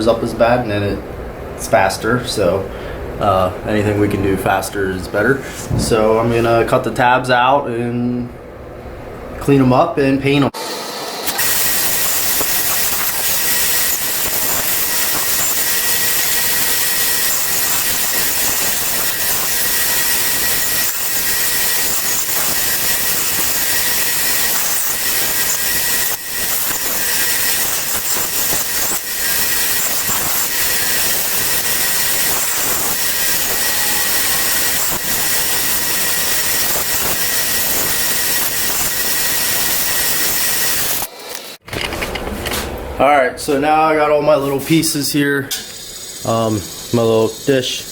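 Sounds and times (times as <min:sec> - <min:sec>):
power tool cutting wood: 0:10.6 - 0:41.6, 0:45.5 - 0:47.9.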